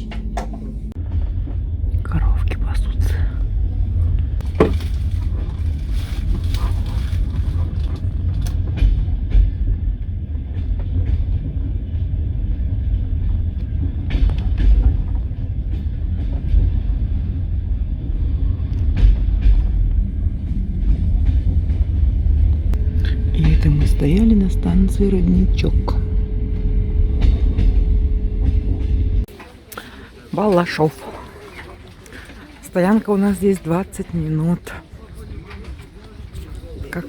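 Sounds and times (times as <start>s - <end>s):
train carriage rumble: 0.0s - 37.0s
wheels clicking over rail joints: 4.2s - 23.3s.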